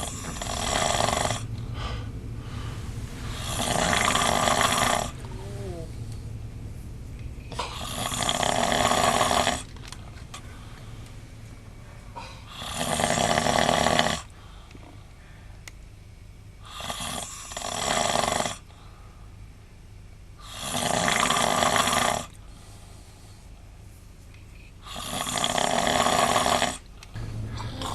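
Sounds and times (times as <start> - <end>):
man snoring: 0.0 - 1.5, 3.3 - 5.9, 7.6 - 9.7, 12.4 - 14.3, 16.6 - 18.7, 20.4 - 22.4, 24.8 - 27.9.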